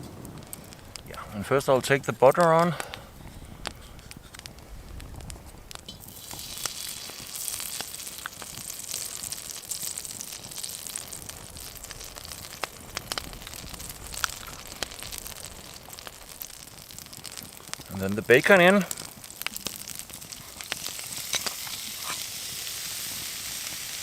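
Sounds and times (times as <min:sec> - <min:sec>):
sharp pops: 0:00.0 - 0:08.7
butter sizzling in a pan: 0:00.4 - 0:24.0.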